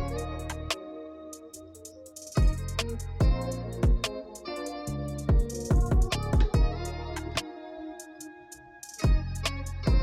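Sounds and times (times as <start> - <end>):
guitar notes over bass line: 0.0 - 0.7, 2.4 - 7.4, 9.1 - 10.0
music beat: 0.0 - 7.4, 8.0 - 10.0.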